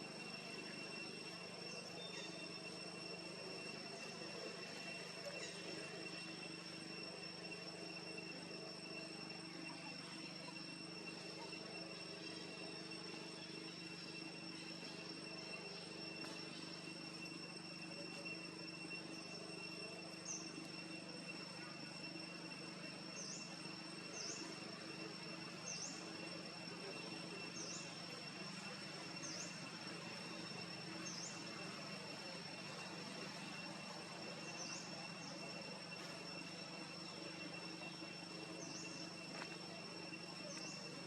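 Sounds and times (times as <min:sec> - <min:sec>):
insects buzzing drone: 0:00.0 - 0:41.0
short insect chirps: 0:00.0 - 0:41.0.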